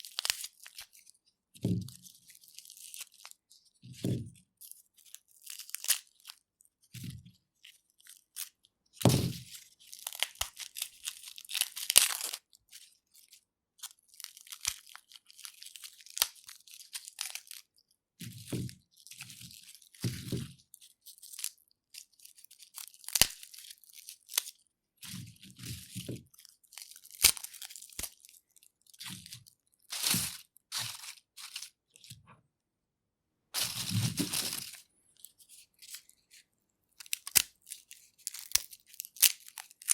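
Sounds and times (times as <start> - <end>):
garlic skins crackling: 22.3 - 24.5, 26.7 - 28.4, 29.0 - 31.7, 33.6 - 34.8, 37.0 - 39.9.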